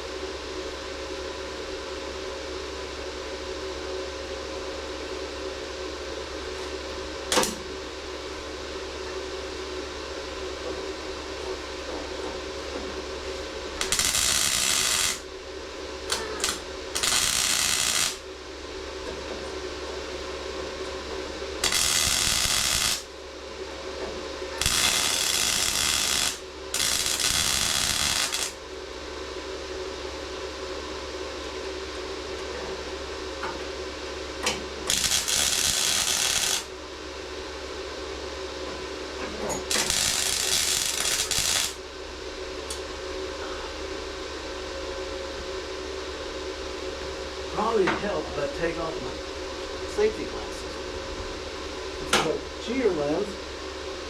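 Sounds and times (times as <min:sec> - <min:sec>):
steady hum: 0:05.4 - 0:54.0
welding arc crackling and hissing: 0:13.8 - 0:15.3, 0:16.1 - 0:18.2, 0:21.6 - 0:23.1, 0:24.6 - 0:28.6, 0:34.9 - 0:36.7, 0:39.7 - 0:41.8.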